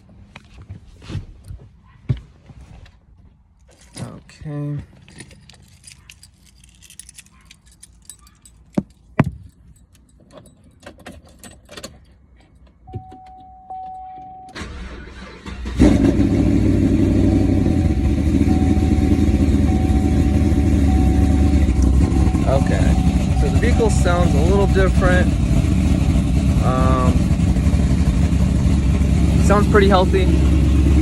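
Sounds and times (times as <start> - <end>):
keys jangling: 4.9 - 12.8
short steady beep: 12.9 - 14.6, 17.2 - 24.5
car engine running loud: 14.6 - 31.0
starter cranking engine: 14.6 - 31.0.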